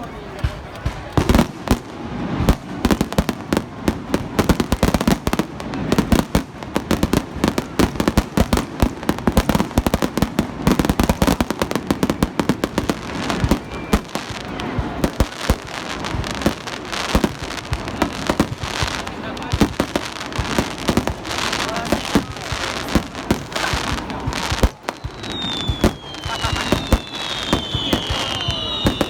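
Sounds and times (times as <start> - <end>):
fireworks crackling: 0.0 - 29.0
firework shells bursting: 10.7 - 29.0.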